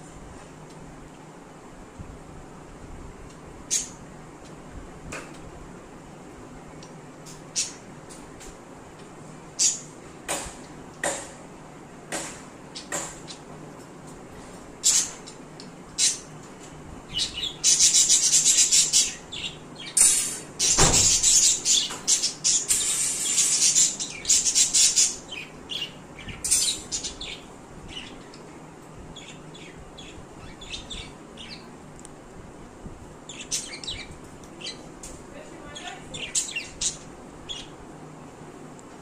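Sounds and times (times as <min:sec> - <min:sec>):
birds chirping: 0:03.7 - 0:04.1, 0:09.5 - 0:09.9, 0:14.8 - 0:31.8, 0:33.2 - 0:37.9
thump: 0:20.8 - 0:21.1.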